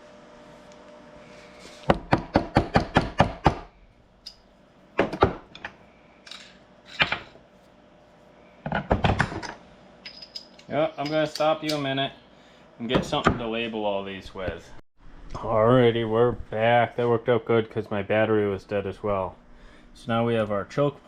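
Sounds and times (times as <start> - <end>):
tools clattering: 5.6 - 7.4, 10.0 - 11.9.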